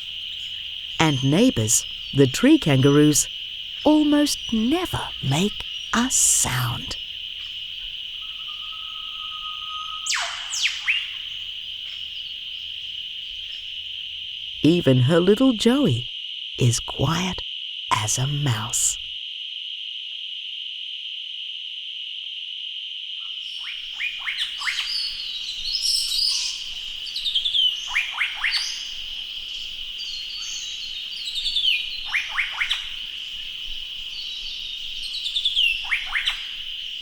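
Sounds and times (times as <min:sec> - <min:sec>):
high insect drone: 0:00.0 - 0:14.6
birds calling with sliding notes: 0:08.1 - 0:11.4.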